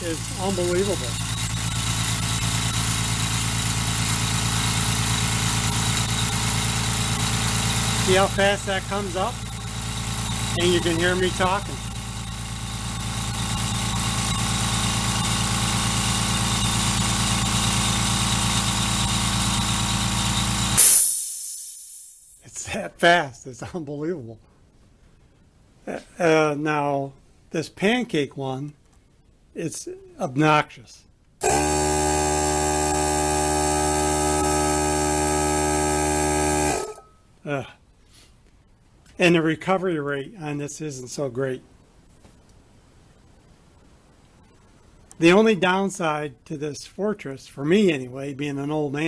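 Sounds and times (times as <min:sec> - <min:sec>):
air compressor running: 0:00.0 - 0:22.4, 0:31.4 - 0:37.2.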